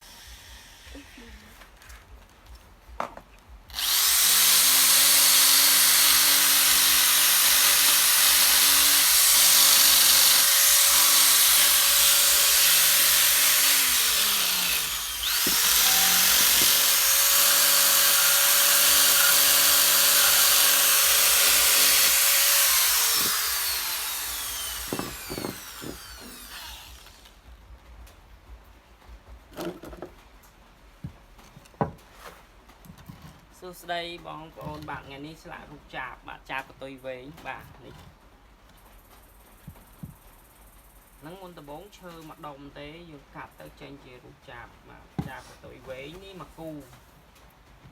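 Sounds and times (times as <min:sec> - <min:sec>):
power carving tool whining: 0:00.0 - 0:01.5, 0:03.7 - 0:27.4.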